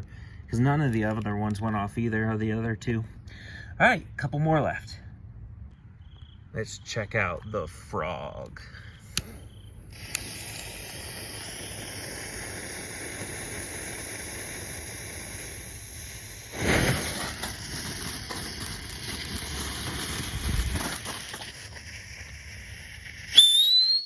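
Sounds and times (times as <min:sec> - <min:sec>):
firework hissing and fizzing: 0:08.9 - 0:24.0
rising whistle: 0:23.2 - 0:24.0.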